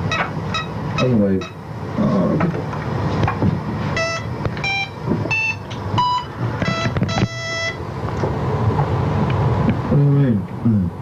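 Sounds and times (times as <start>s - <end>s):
short electronic beeps: 0.1s - 1.6s, 4.0s - 7.8s.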